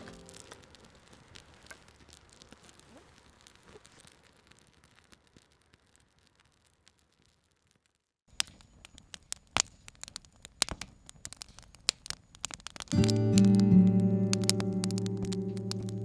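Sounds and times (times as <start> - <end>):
music with sustained chords: 0.0 - 0.4, 13.0 - 16.0
sharp pops and crackles: 0.0 - 16.0.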